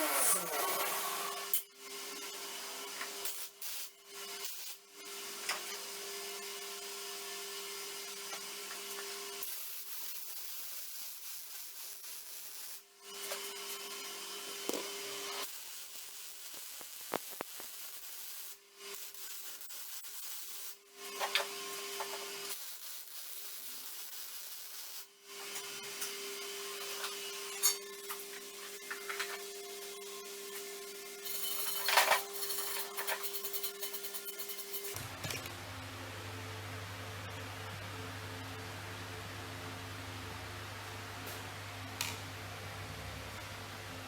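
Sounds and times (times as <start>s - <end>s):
power tool sanding or grinding: 0.0s - 1.6s, 30.4s - 35.0s.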